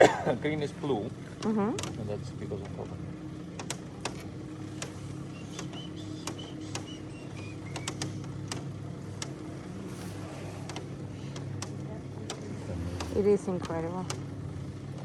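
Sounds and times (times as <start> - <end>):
low machinery hum: 0.0 - 15.0
sharp clicks: 3.5 - 9.4, 10.0 - 14.3.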